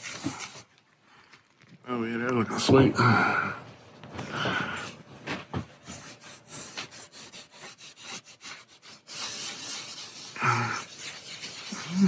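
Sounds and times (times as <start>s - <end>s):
rag rubbing on wooden tabletop: 0.0s - 0.7s, 5.8s - 12.0s.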